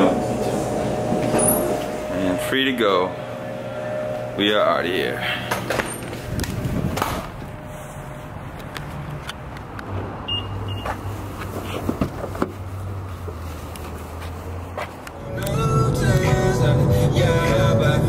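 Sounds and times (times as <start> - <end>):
car engine humming: 0.0 - 18.0
music: 15.2 - 18.0.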